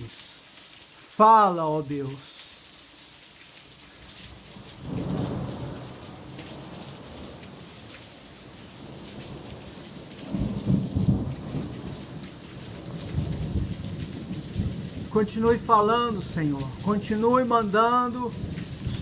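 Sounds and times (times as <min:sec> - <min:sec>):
steady rain falling: 0:00.0 - 0:19.0
thunder rumbling: 0:04.8 - 0:07.6, 0:10.2 - 0:19.0.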